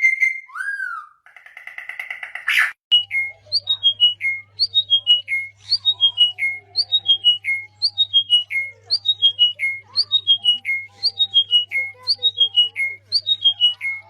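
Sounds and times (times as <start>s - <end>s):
bird singing whistled notes: 2.9s - 14.0s.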